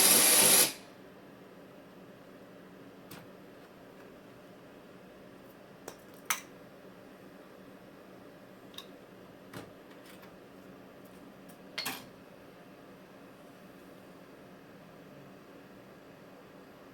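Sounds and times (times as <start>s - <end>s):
computer fan humming: 0.0s - 0.8s.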